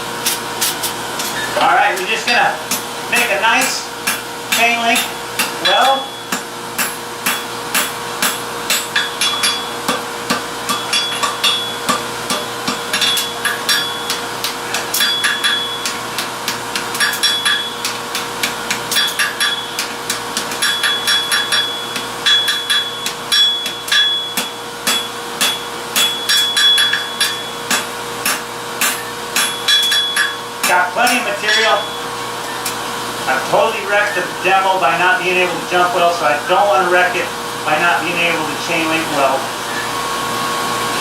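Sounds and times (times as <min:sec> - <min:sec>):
hammer ringing on anvil: 0:02.7 - 0:32.6.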